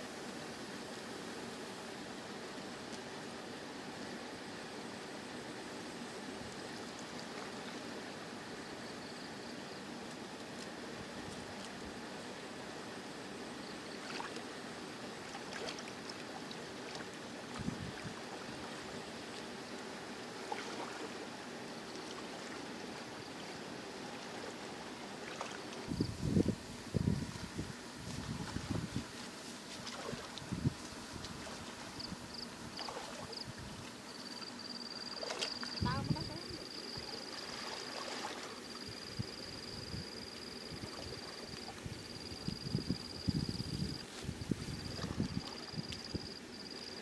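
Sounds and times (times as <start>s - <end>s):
faint water noise: 0.0s - 47.0s
small splashes: 15.3s - 16.2s, 20.4s - 21.2s, 25.2s - 26.0s, 28.0s - 34.4s, 35.0s - 36.0s, 37.0s - 38.8s
running water: 22.0s - 39.0s
wind buffeting microphone: 25.9s - 29.2s, 30.3s - 33.8s, 41.8s - 46.3s
insect trilling: 32.0s - 38.0s.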